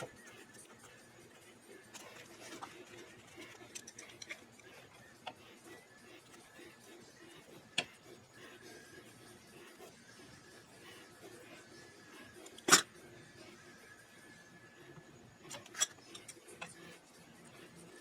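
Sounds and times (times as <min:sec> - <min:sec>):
tools clicking and tapping: 0:01.9 - 0:05.4, 0:15.5 - 0:16.9.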